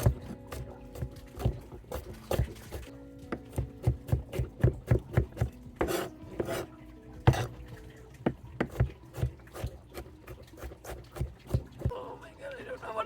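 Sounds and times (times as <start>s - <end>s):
cheese grated on metal grater: 5.8s - 6.7s.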